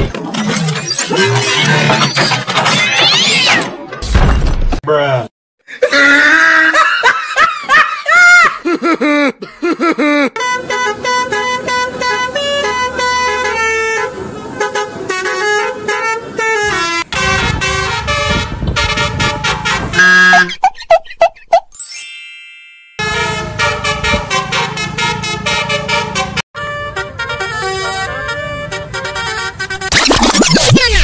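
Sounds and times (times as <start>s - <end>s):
multi-tone bus horn tune: 10.4s - 20.6s, 23.0s - 30.0s.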